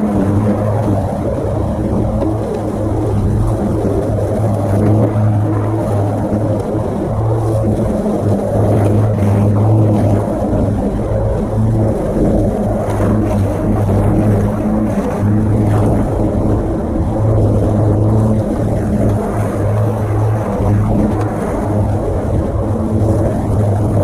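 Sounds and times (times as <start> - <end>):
electric lawnmower humming: 0.0 - 24.0.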